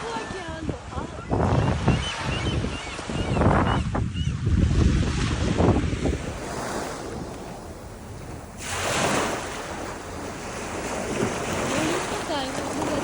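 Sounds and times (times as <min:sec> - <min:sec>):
wind buffeting microphone: 0:00.0 - 0:13.0
surf washing on shore: 0:04.5 - 0:13.0.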